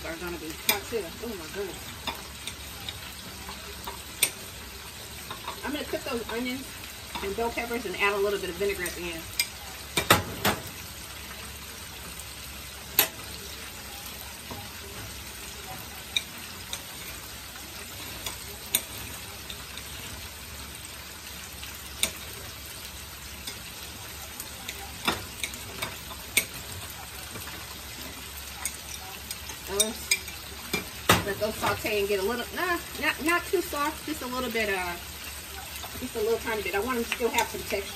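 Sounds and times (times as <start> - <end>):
food sizzling in hot oil: 0.0 - 37.9
utensil clicking against pan: 2.0 - 4.5, 12.9 - 13.3, 18.0 - 20.0, 22.0 - 22.3, 24.6 - 31.8.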